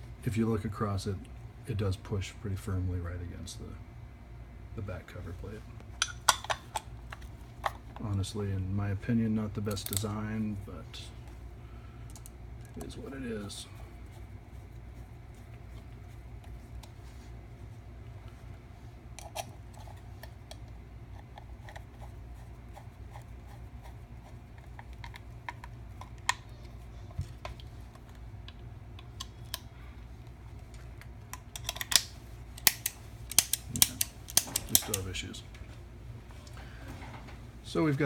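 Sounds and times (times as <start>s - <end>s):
steady low hum: 0.0s - 38.0s
guitar pedal handling clicks: 31.6s - 35.1s.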